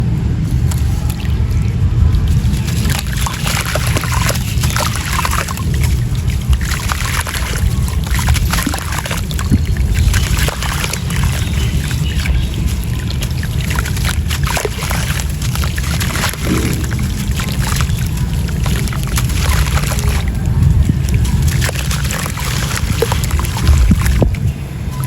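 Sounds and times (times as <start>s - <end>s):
low rumble: 0.0s - 25.0s.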